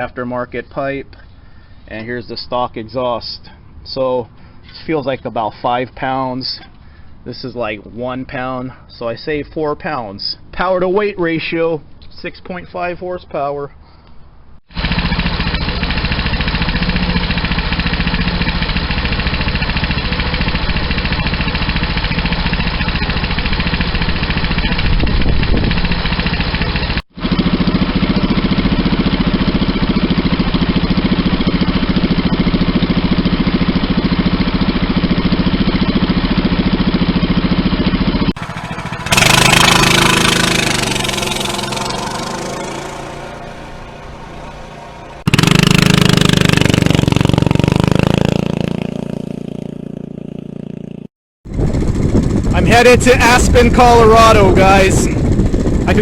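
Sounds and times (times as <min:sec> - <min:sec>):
small motorbike engine idling: 0:14.7 - 0:52.9, 0:54.9 - 0:56.0.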